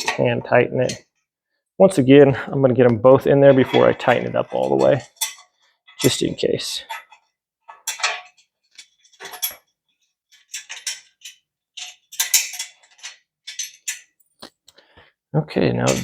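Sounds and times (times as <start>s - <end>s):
bolts rattling against metal frame: 0.0s - 1.1s, 2.9s - 9.7s, 10.3s - 14.2s, 15.7s - 16.0s.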